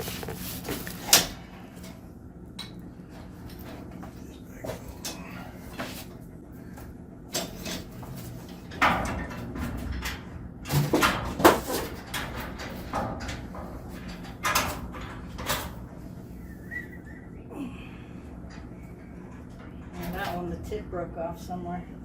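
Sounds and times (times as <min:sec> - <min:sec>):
clunks and rattles of rollers: 0:00.0 - 0:02.0, 0:06.8 - 0:16.8, 0:18.4 - 0:21.2
metal garage door rolling: 0:07.2 - 0:17.4, 0:18.3 - 0:21.2.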